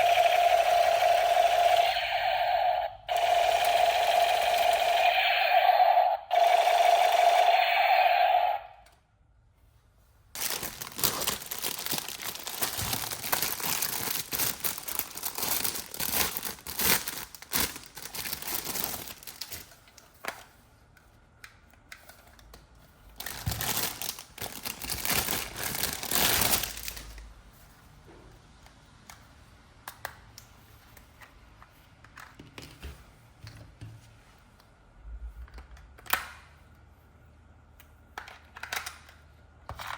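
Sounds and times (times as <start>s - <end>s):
steady tone: 0.0s - 8.8s
packaging crinkling and tearing: 10.3s - 20.1s, 23.2s - 27.2s.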